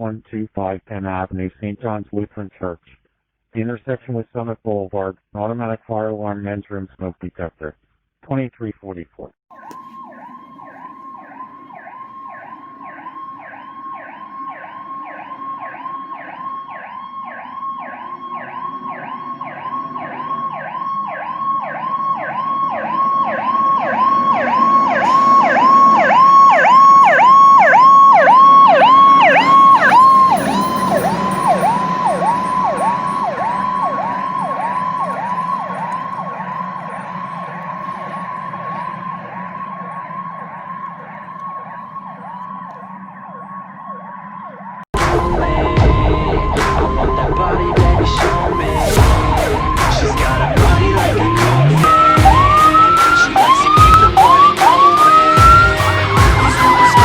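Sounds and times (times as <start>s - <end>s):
fire engine siren yelping: 9.5s - 57.0s
diesel engine rumble: 26.3s - 41.5s, 45.0s - 57.0s.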